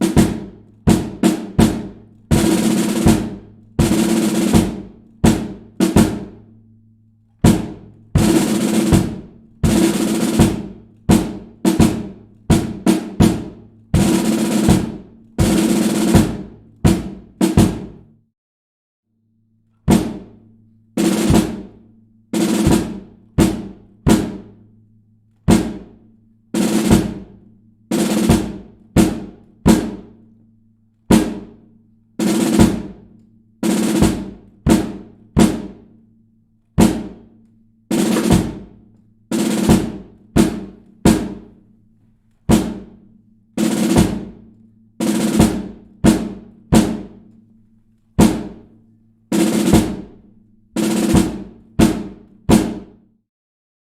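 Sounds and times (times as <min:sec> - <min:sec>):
bass drum: 0:00.0 - 0:06.6, 0:07.4 - 0:18.2, 0:19.9 - 0:20.4, 0:22.5 - 0:24.6, 0:25.5 - 0:30.2, 0:31.1 - 0:36.0, 0:36.8 - 0:41.7, 0:42.5 - 0:44.4, 0:45.0 - 0:47.2, 0:48.2 - 0:48.7, 0:49.4 - 0:52.9
snare drum cadence: 0:37.9 - 0:38.7.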